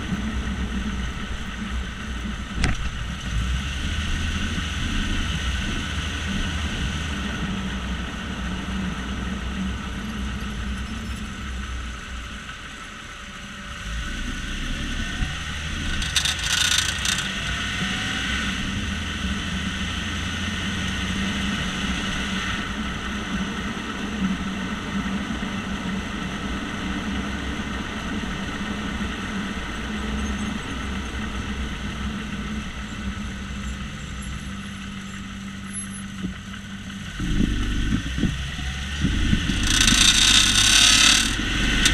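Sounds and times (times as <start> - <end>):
road rumble: 0.0 - 41.9
wheel grinding noise: 13.4 - 19.3, 32.9 - 41.9.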